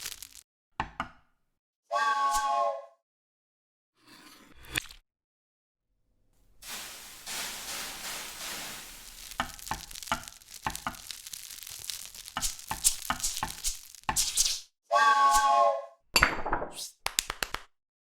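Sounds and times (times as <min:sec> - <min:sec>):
sizzling hiss with crackling pops: 0:00.0 - 0:00.4, 0:06.6 - 0:14.6.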